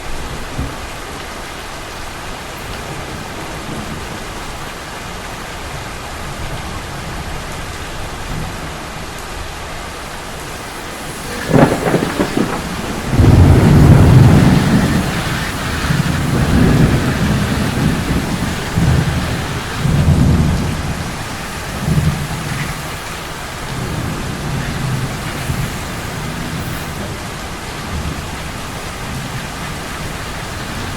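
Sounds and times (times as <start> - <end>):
steady rain hiss: 0.0 - 30.9
thunder crack and rumble: 9.8 - 30.9.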